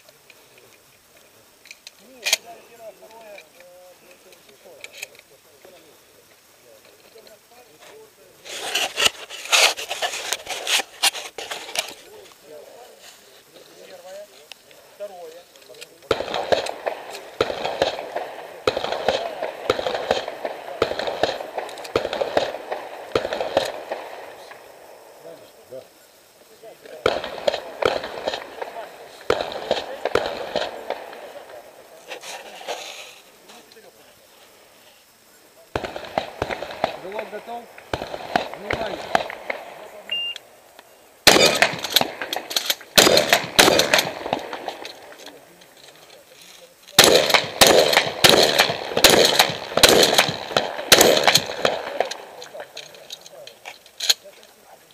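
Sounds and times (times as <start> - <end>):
shotgun shots with echo: 16.1 - 24.6, 26.9 - 31.6, 35.8 - 40.0, 41.2 - 45.1, 47.0 - 52.6
shot timer beep: 40.1 - 40.4.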